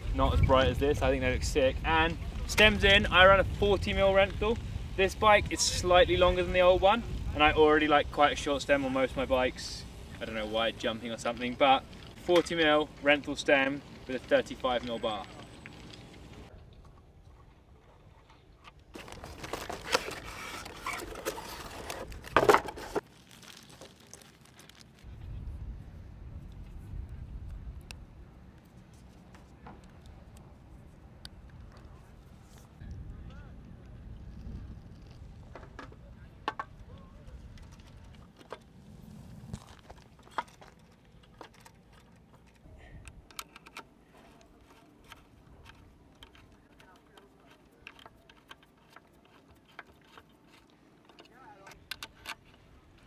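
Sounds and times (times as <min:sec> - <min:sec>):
wind rumble on microphone: 0:00.0 - 0:10.2, 0:25.0 - 0:28.5, 0:30.1 - 0:40.0
plastic packaging crinkling and tearing: 0:19.0 - 0:25.1.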